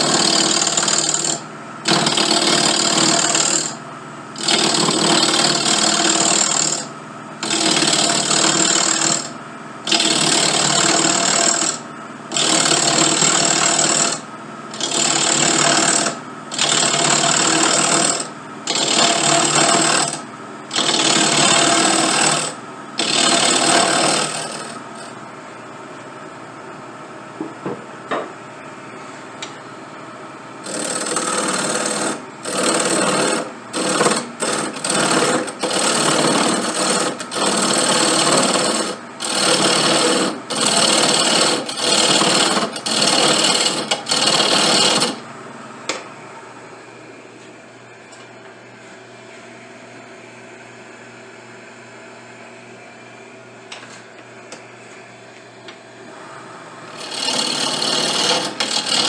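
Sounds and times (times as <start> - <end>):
lathe tool cutting wood: 0.0 - 3.8, 4.4 - 25.1, 30.6 - 45.2, 57.0 - 59.0
lathe motor hum: 0.0 - 25.2, 30.6 - 45.2, 56.0 - 59.0.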